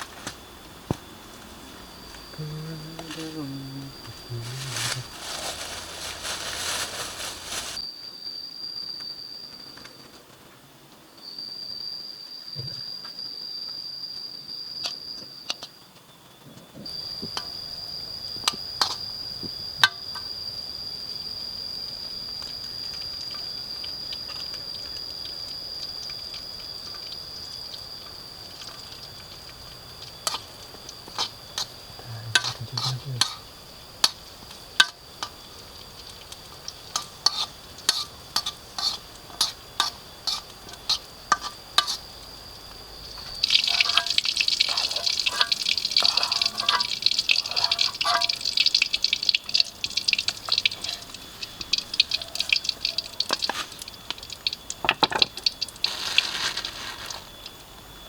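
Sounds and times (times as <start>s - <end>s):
high-pitched insect drone: 0.0s - 10.0s, 11.2s - 15.8s, 16.7s - 58.0s
utensils clinking against pot: 32.4s - 34.2s, 36.9s - 42.0s, 43.2s - 57.3s.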